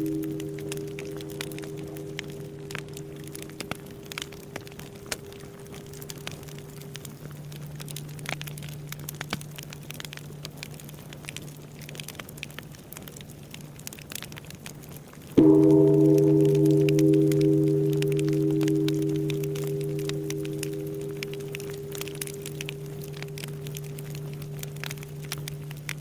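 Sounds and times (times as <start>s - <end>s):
temple bell hum: 0.0s - 10.2s, 15.4s - 26.0s
bonfire crackling and popping: 0.0s - 26.0s.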